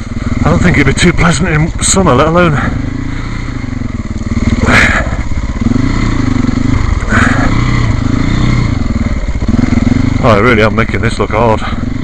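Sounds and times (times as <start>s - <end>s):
motorcycle engine revving: 0.0s - 12.0s.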